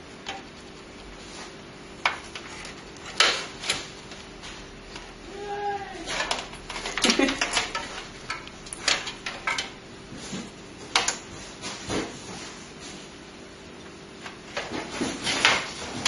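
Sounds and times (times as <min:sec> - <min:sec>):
computer parts clicking and knocking: 0:06.2 - 0:09.8.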